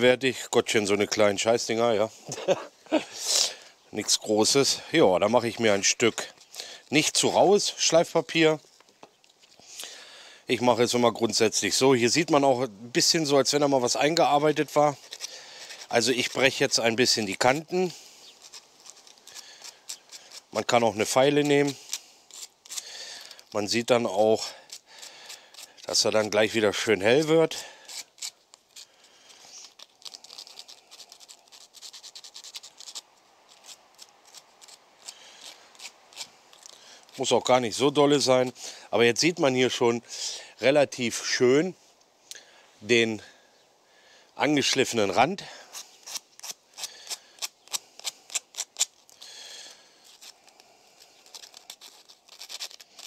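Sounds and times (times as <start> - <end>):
brake pad scratching on sandpaper: 13.0 - 38.6, 45.6 - 53.0.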